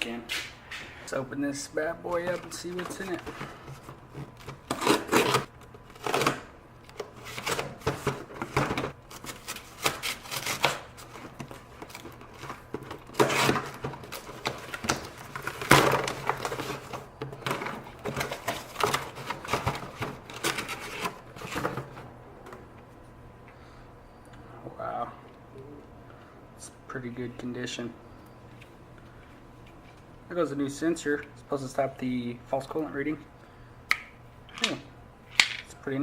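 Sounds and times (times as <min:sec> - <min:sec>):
packaging tearing and crinkling: 0:04.2 - 0:08.2, 0:08.9 - 0:22.0.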